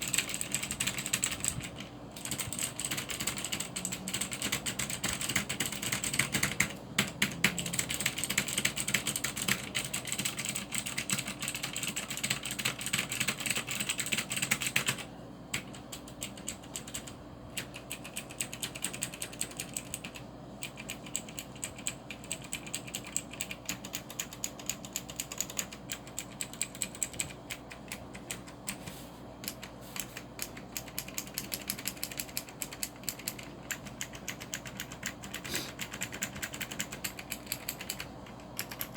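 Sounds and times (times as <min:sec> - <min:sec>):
mechanical keyboard typing: 0:00.0 - 0:28.8, 0:29.4 - 0:38.9.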